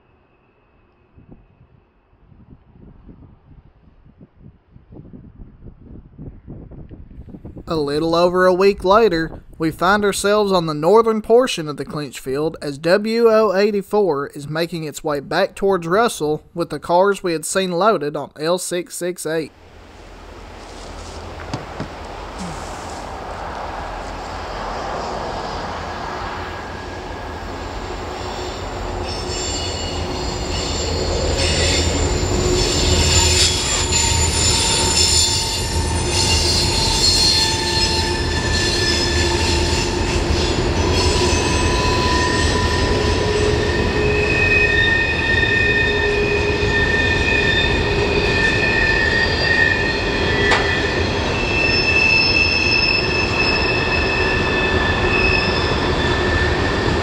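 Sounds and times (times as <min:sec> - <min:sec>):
freight train rumbling past: 0:19.6 - 0:57.0
train wheels squealing: 0:24.4 - 0:57.0.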